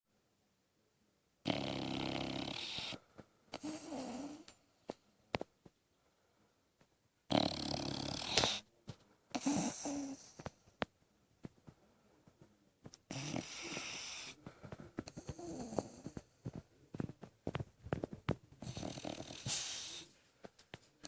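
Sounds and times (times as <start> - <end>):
dog snoring: 1.4 - 4.6, 7.3 - 8.7, 9.3 - 10.5, 13.1 - 16.6, 18.6 - 20.2
dog breathing softly: 7.3 - 10.8, 13.1 - 16.7, 17.5 - 20.5.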